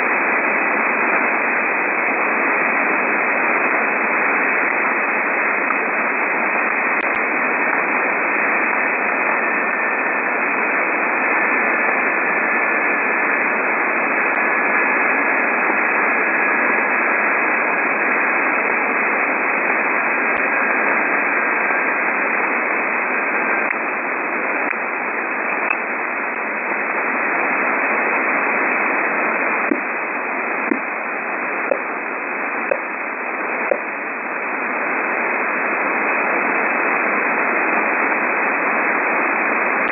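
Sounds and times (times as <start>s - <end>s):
radio static hiss: 0.0s - 39.9s
short radio pips: 28.8s - 34.2s.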